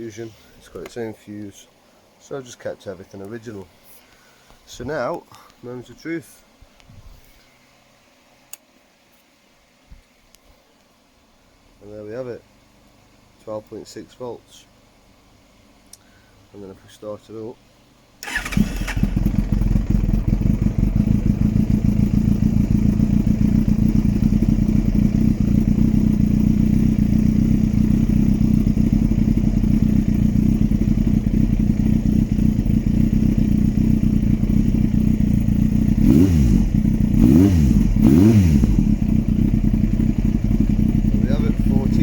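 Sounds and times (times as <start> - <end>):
motorcycle engine idling and revving: 18.2 - 42.0.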